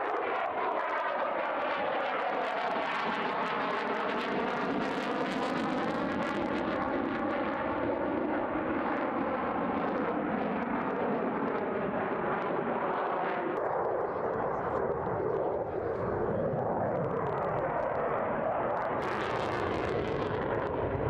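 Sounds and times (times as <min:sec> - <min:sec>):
fighter jet engine running: 0:02.8 - 0:21.0.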